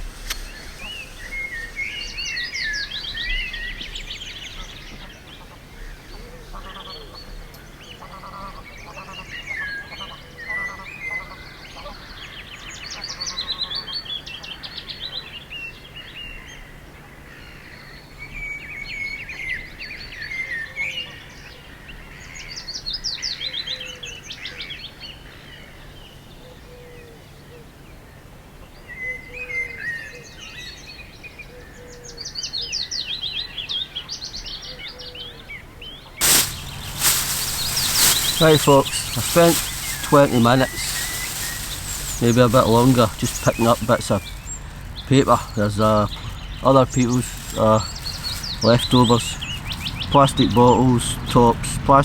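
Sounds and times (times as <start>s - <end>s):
songbirds singing fast trills: 36.2s - 51.5s.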